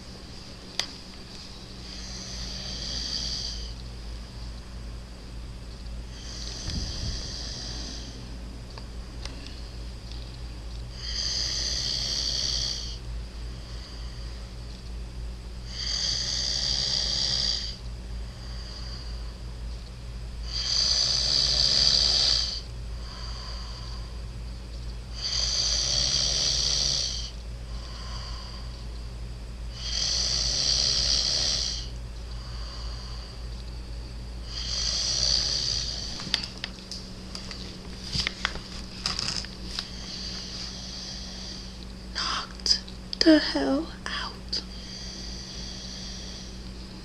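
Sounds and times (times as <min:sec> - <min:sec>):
faint breaths: 0:01.4 - 0:03.8, 0:06.1 - 0:08.4, 0:10.9 - 0:14.6, 0:15.6 - 0:19.5, 0:20.4 - 0:24.3, 0:25.1 - 0:29.0, 0:29.7 - 0:33.6, 0:39.7 - 0:42.5, 0:44.6 - 0:47.0
man snoring: 0:01.9 - 0:03.8, 0:06.1 - 0:08.2, 0:10.9 - 0:13.0, 0:15.6 - 0:17.8, 0:20.4 - 0:24.1, 0:25.1 - 0:28.7, 0:29.7 - 0:33.4, 0:34.4 - 0:36.2, 0:39.9 - 0:42.4, 0:44.7 - 0:46.6.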